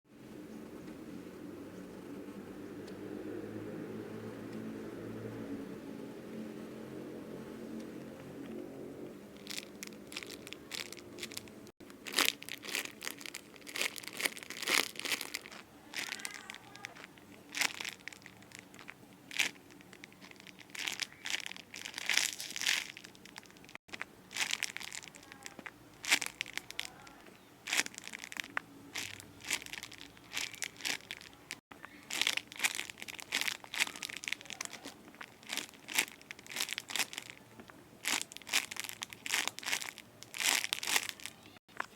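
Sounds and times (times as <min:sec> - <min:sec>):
foam toys crinkling and rustling: 0:09.3 - 0:41.9.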